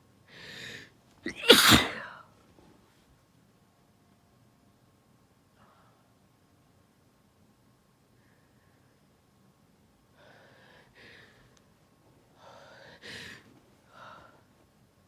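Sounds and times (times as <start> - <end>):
woman sneezing: 1.3 - 2.2.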